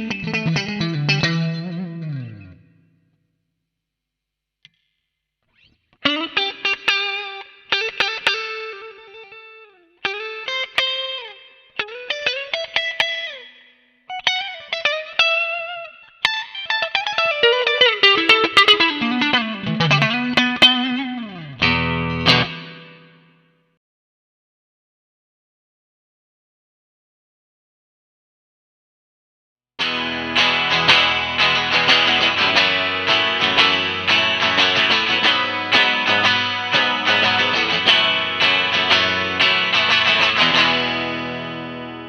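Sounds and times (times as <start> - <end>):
electric guitar lead phrases: 0.0 - 3.1, 5.5 - 23.6, 29.8 - 42.0.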